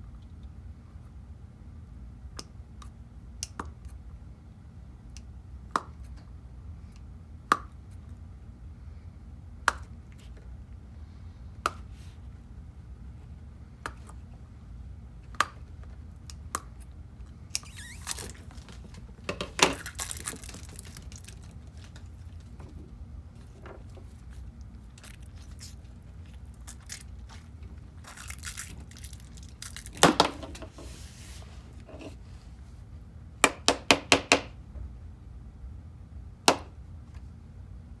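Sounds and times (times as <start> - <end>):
crinkling and tearing: 17.5 - 31.9.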